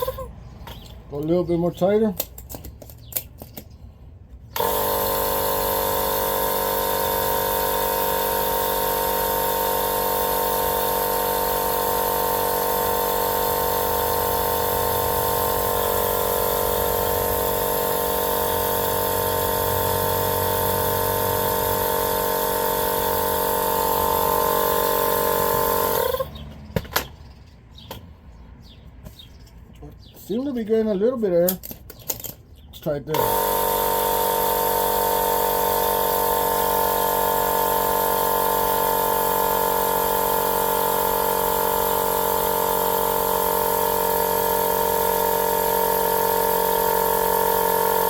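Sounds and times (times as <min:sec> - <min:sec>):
small air pump running: 0:00.0 - 0:00.9, 0:04.5 - 0:26.3, 0:33.1 - 0:48.0.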